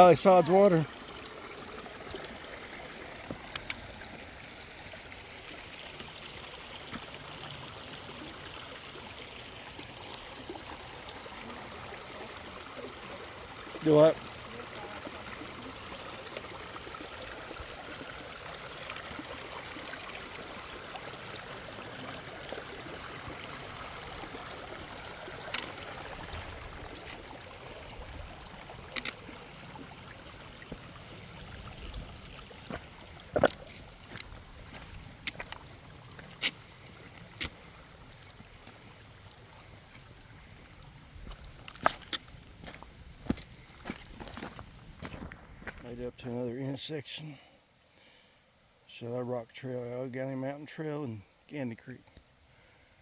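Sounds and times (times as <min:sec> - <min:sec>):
creek water running: 0:00.0 - 0:53.0
footsteps on a trail: 0:32.6 - 0:36.6, 0:41.2 - 0:45.9.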